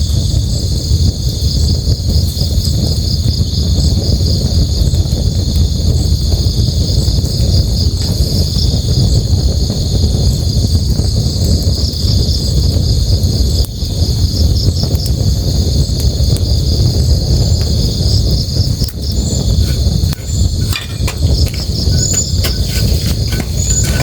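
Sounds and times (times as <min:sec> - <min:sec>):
campfire crackling: 0:05.6 - 0:24.0
crickets chirping: 0:16.5 - 0:24.0.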